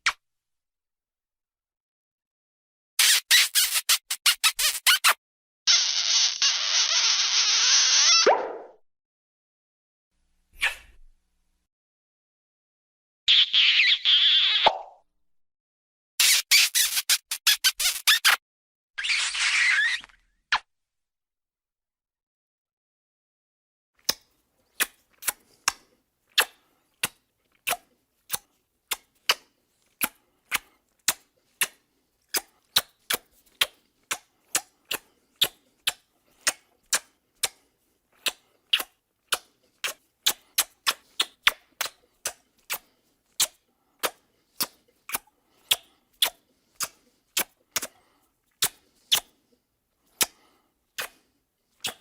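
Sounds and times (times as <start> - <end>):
kissing lip smacks: 10.6 - 11.0, 24.0 - 37.6, 38.2 - 49.4, 50.1 - 50.4, 51.0 - 51.2, 51.8 - 52.0.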